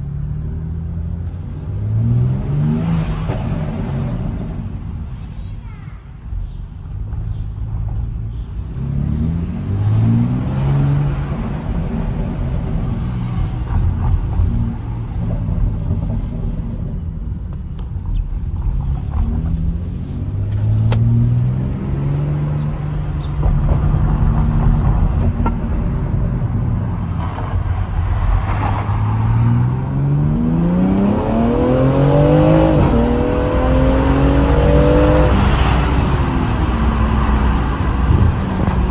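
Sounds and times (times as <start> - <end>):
car engine accelerating hard: 18.5 - 38.9.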